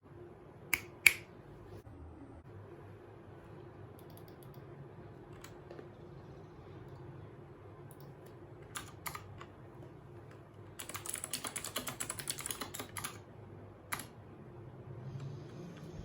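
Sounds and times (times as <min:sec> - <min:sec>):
mechanical keyboard keystrokes: 0:10.8 - 0:13.2.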